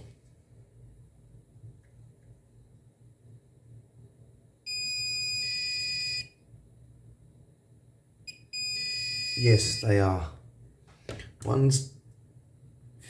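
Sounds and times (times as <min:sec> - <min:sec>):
multimeter high-pitched beep: 0:04.7 - 0:06.3, 0:08.3 - 0:09.9.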